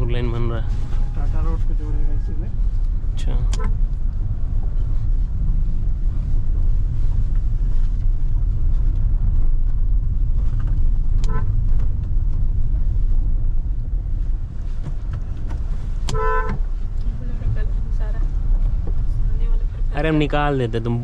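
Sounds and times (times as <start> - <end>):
car engine and road rumble: 0.0 - 21.0
car horn toot: 11.2 - 11.6, 16.1 - 16.7.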